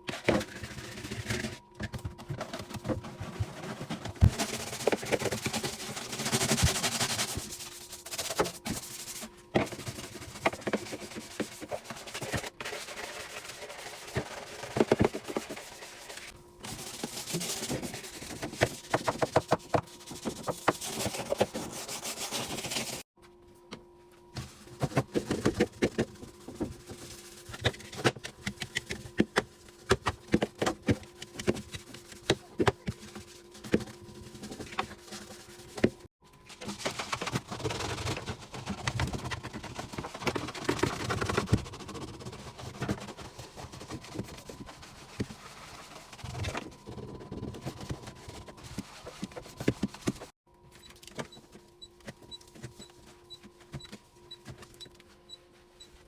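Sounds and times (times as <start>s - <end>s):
scrubbing and wiping surfaces: 2.4s - 23.0s.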